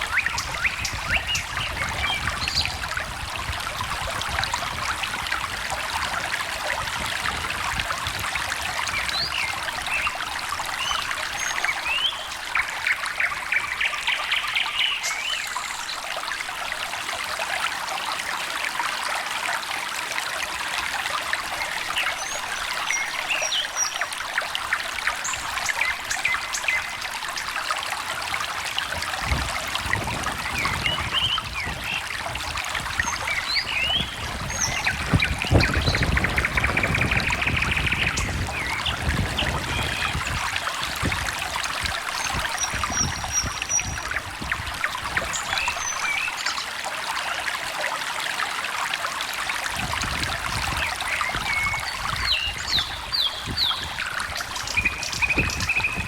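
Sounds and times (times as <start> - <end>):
stream trickling: 0.0 - 56.0
birds chirping: 51.2 - 56.0.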